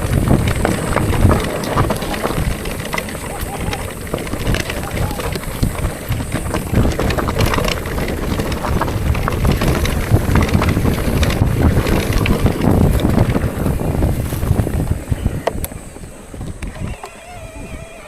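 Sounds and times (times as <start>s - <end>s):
rattling clicks: 0.0s - 13.4s
bicycle tyre noise: 0.0s - 18.0s
wind rumbling on microphone: 0.0s - 18.0s.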